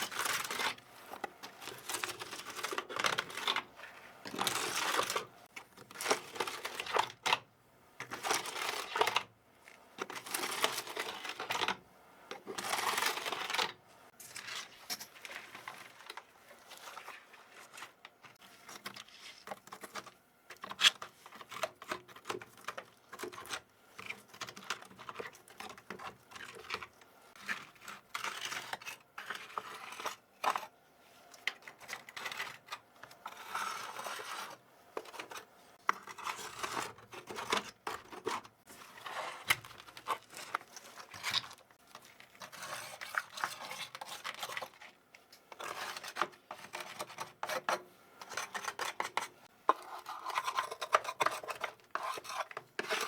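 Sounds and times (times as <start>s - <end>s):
keyboard plastic clicks and scratches: 0.0s - 3.7s, 17.7s - 30.7s, 31.3s - 53.0s.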